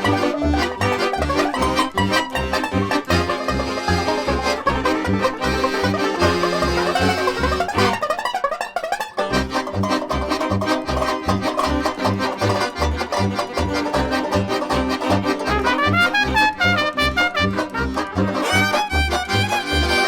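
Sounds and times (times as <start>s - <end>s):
jazz music with brass: 15.4s - 20.0s.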